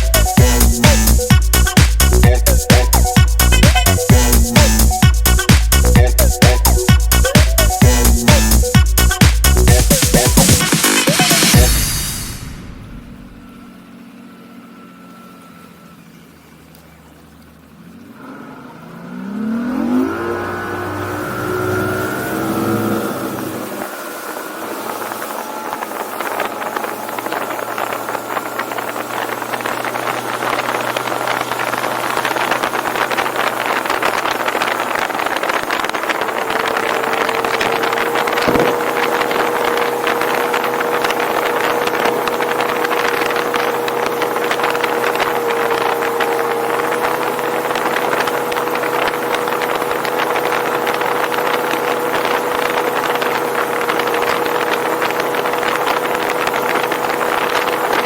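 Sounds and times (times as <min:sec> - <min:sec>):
boat engine drone: 0:00.0 - 0:58.0
rush of wind and water: 0:00.0 - 0:58.0
sharp knock: 0:38.5 - 0:38.8.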